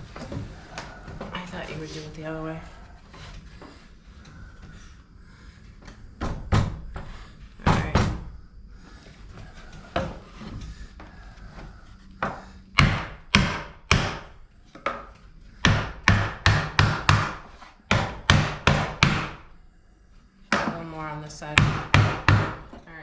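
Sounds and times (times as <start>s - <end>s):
sharp wooden knocks: 6.2s - 8.3s, 12.2s - 19.4s, 20.5s - 20.9s, 21.5s - 22.8s.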